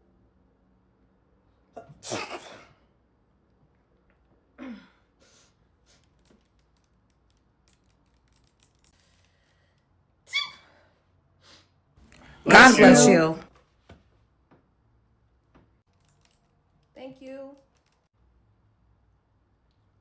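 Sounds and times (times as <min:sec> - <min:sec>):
person sneezing: 0:01.8 - 0:02.7
high-pitched little sneeze: 0:01.8 - 0:02.8, 0:10.3 - 0:10.7.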